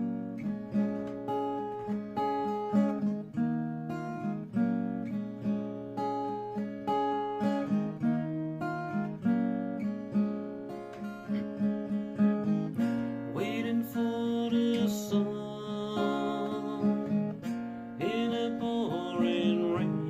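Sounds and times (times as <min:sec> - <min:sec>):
acoustic guitar playing: 0:00.0 - 0:20.0
person singing: 0:13.3 - 0:20.0.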